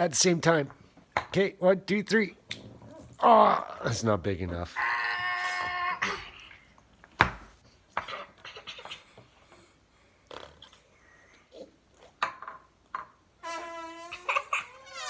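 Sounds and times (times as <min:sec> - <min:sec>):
slime fart noises: 0:10.3 - 0:10.8, 0:13.4 - 0:15.0.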